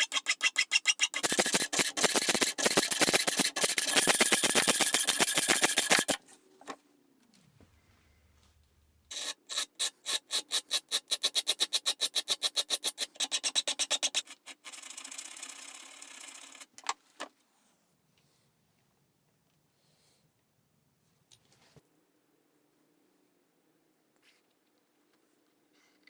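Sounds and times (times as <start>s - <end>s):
file scraping: 0.0s - 6.2s, 9.1s - 14.7s
hand file strokes: 0.0s - 6.2s, 9.1s - 14.9s.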